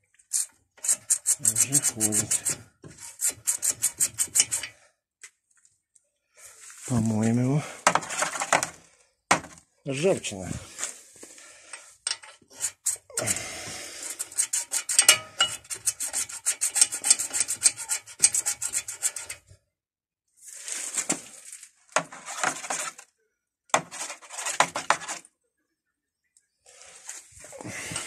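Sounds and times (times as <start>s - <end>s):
scrubbing rusty metal pin: 0.3s - 4.8s, 12.0s - 13.1s, 14.0s - 19.5s.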